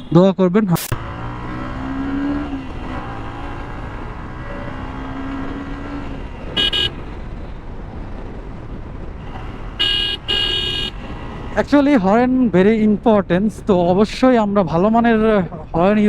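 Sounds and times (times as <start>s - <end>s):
motorcycle engine and road noise: 0.8s - 16.0s
short high horn beep: 6.6s - 7.0s, 9.8s - 10.9s.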